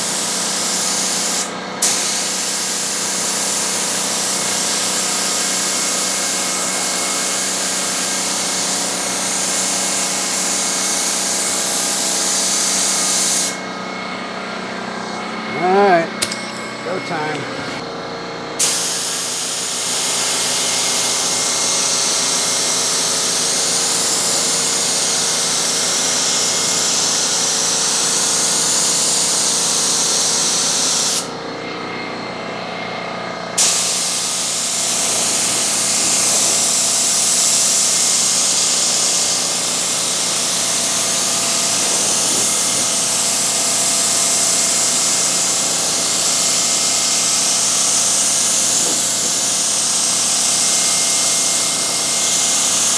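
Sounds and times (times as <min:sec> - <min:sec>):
paint spray gun hissing: 0:00.0 - 0:13.6, 0:18.6 - 0:31.2, 0:33.6 - 0:52.9
machine hum: 0:13.6 - 0:18.6.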